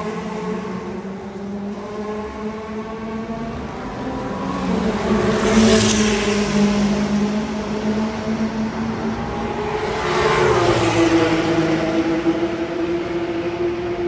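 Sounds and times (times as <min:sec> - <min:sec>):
race car passing by: 0:00.0 - 0:14.0
steady engine drone: 0:06.2 - 0:14.0.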